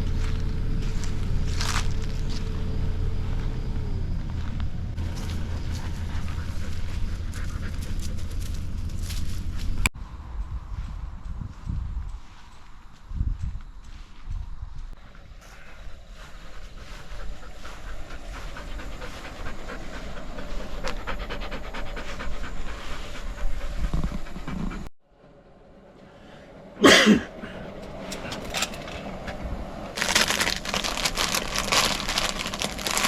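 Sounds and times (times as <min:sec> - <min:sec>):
dog panting: 0:05.2 - 0:08.8, 0:16.3 - 0:24.9
packaging crinkling: 0:30.0 - 0:33.0.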